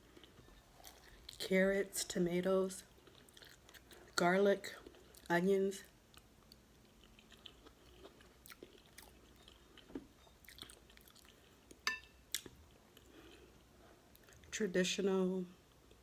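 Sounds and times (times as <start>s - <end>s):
close-up chewing: 0.0s - 1.4s, 2.8s - 5.3s, 6.1s - 14.5s.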